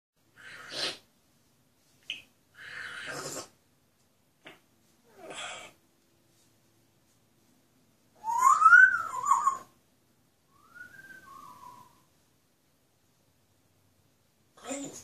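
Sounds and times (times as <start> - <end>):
parrot hissing: 0.4 - 1.1, 2.6 - 3.6, 5.1 - 5.8.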